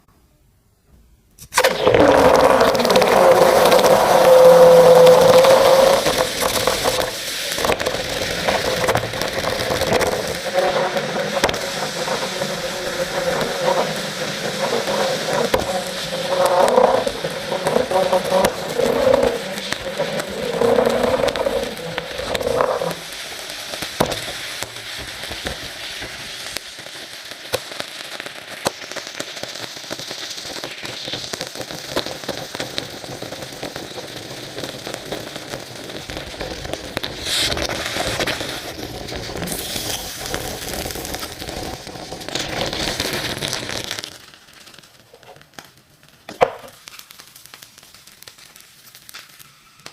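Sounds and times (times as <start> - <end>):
sharp pop: 0.9 - 23.2, 23.8 - 26.3, 46.3 - 47.2
burning gel crackling and fizzing: 1.4 - 49.9.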